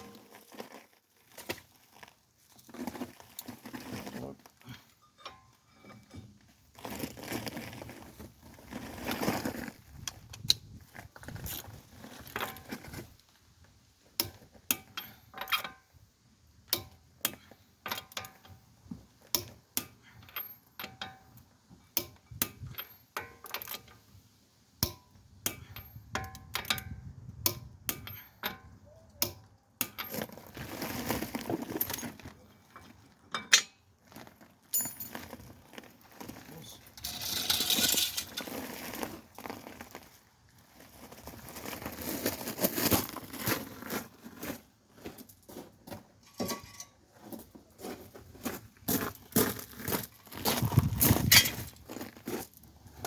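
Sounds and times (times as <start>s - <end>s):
tools and metal parts clinking: 4.7s - 6.4s, 14.2s - 16.0s, 16.7s - 18.6s, 19.3s - 24.1s, 24.8s - 30.5s, 31.6s - 33.9s, 34.7s - 35.4s, 36.9s - 38.6s, 46.2s - 47.1s, 50.0s - 51.9s
scraping clatter: 36.2s - 39.6s, 46.2s - 47.0s.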